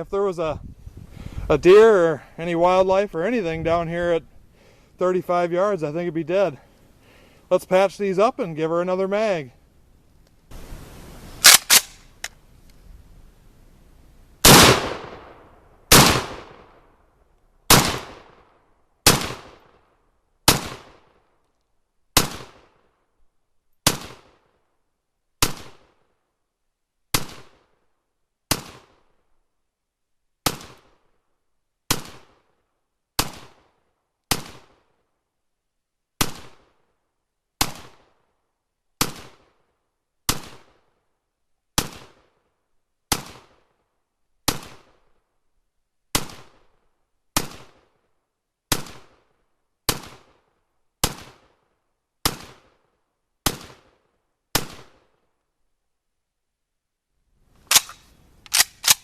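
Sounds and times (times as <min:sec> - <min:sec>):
sharp gun clicks: 0:11.4 - 0:12.8, 0:57.7 - 0:59.0
pistol gunshots with echo: 0:14.4 - 0:16.7.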